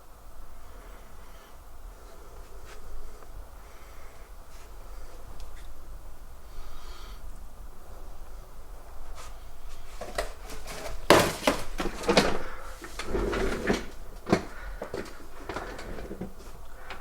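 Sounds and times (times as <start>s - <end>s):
knocks and clunks: 10.0s - 17.0s.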